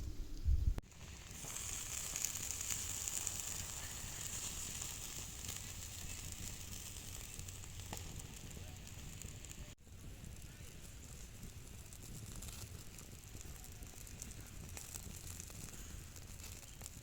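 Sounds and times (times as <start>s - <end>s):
food frying in hot oil: 0.8s - 17.0s.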